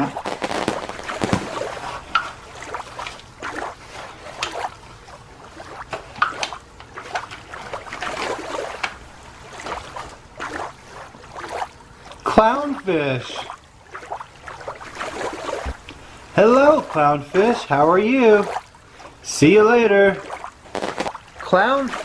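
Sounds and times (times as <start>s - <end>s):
toys knocking in water: 0.0s - 3.8s, 5.8s - 9.0s
water splashing and trickling: 0.0s - 22.0s.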